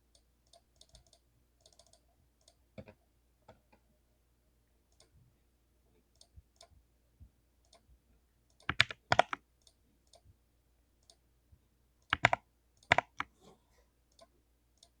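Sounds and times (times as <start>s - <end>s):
mechanical keyboard clicks: 8.6s - 9.8s, 12.1s - 13.3s.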